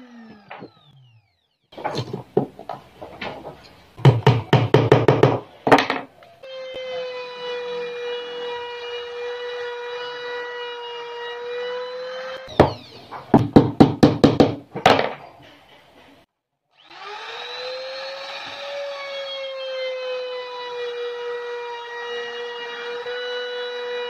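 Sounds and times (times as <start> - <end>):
power tool motor whining: 0.0 - 2.1, 6.4 - 13.4, 16.7 - 24.0
sharp knocks: 1.8 - 6.1, 12.5 - 15.2.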